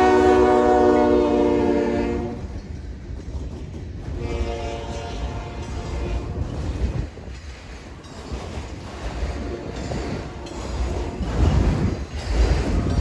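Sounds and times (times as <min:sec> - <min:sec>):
locomotive horn: 0:00.0 - 0:02.5, 0:04.1 - 0:06.8
train rumbling by: 0:00.0 - 0:13.0
wind buffeting microphone: 0:00.0 - 0:13.0.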